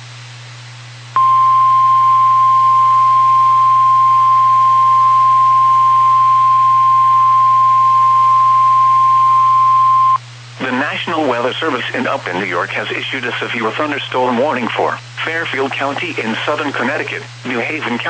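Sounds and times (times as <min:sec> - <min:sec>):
low hum: 0:01.0 - 0:10.6.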